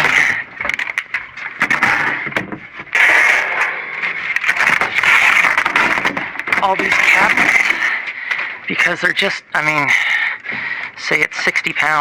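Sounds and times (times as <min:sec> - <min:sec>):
debris knocking and clattering: 0:00.0 - 0:08.0.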